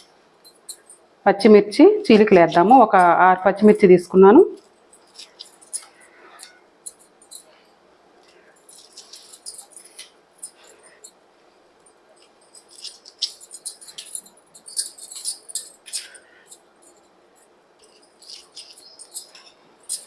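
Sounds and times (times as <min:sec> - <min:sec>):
light crisp clicks and crackles: 0:11.8 - 0:20.0.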